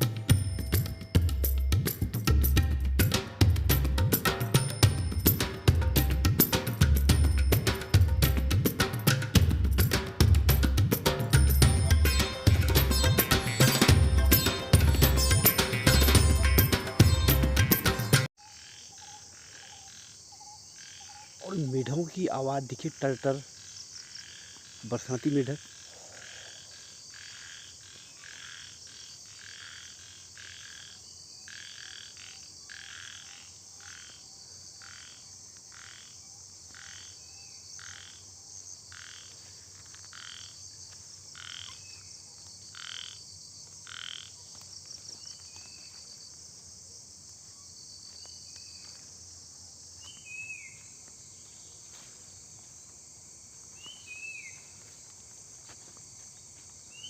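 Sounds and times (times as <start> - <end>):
frogs croaking: 18.4 - 45.9
crickets and insects chorus: 18.4 - 57.0.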